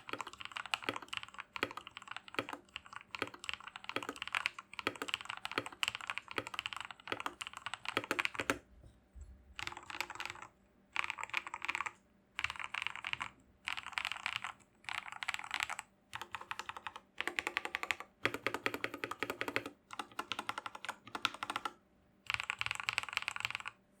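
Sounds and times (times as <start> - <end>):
mechanical keyboard typing: 0.0 - 8.6, 9.6 - 23.8.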